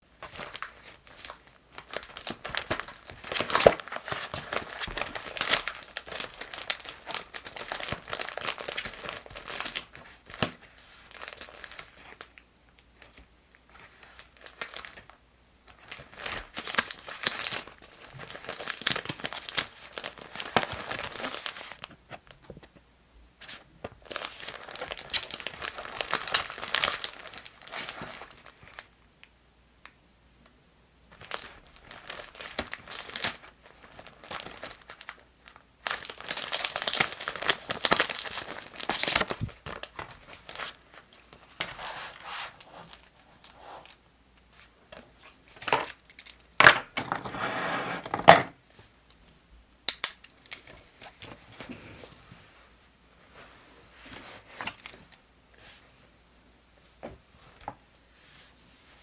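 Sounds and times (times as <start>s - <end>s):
paper and plastic crinkling: 0.2s - 12.4s, 13.0s - 22.8s, 23.4s - 29.0s, 31.1s - 47.2s, 53.3s - 55.8s.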